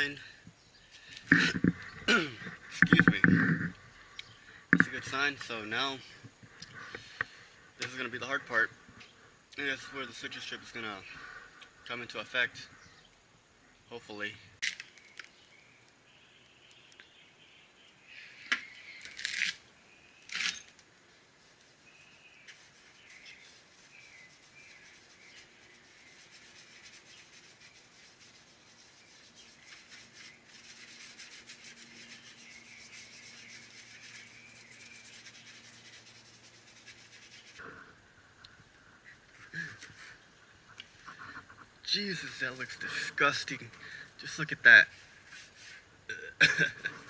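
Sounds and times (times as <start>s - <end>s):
birds chirping: 0.0s - 20.3s, 21.8s - 44.9s
scraping paint on metal: 1.3s - 3.8s, 21.6s - 38.0s.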